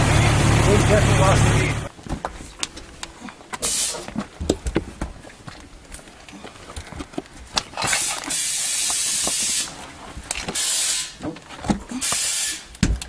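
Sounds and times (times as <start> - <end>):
compressed air hissing: 3.6 - 4.1, 7.9 - 9.8, 10.5 - 11.2, 12.0 - 12.7.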